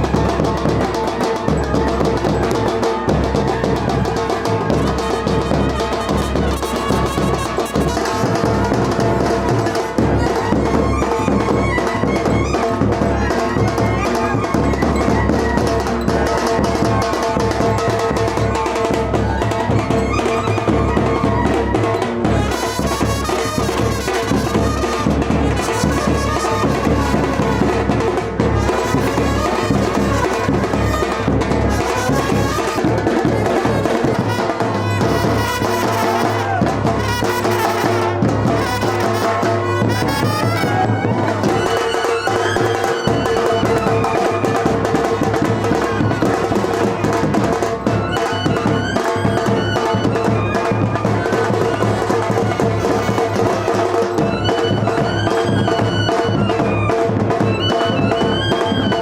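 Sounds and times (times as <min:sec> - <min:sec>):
steady drum beat: 0:00.0 - 0:59.0
brass music: 0:01.7 - 0:11.8, 0:21.2 - 0:41.7, 0:52.4 - 0:54.0.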